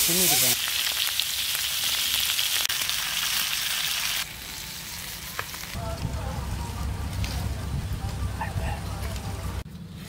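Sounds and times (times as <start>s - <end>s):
butter sizzling in a pan: 0.0s - 4.2s.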